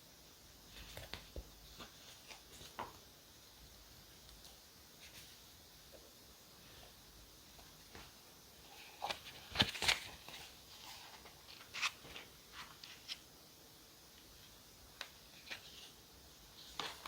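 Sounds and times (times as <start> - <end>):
paper rustling and tapping: 9.0 - 10.4, 16.7 - 17.0.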